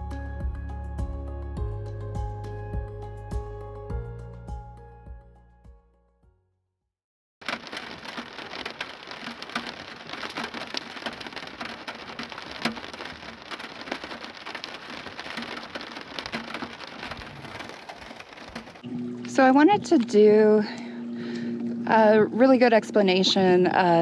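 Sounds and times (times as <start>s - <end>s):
patter of falling water drops: 7.4s - 19.4s.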